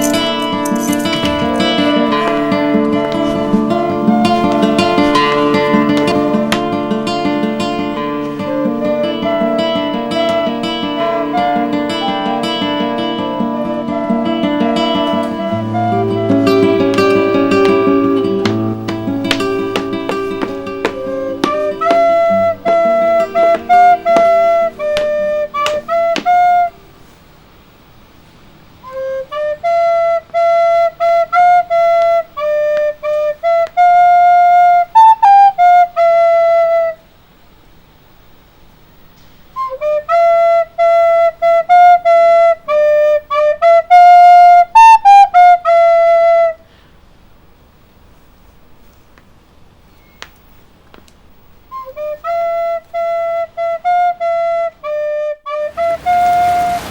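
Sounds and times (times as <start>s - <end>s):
plucked guitar: 0.0s - 26.9s
flute melody: 0.0s - 27.2s, 28.8s - 37.1s, 39.6s - 46.6s, 51.7s - 56.9s.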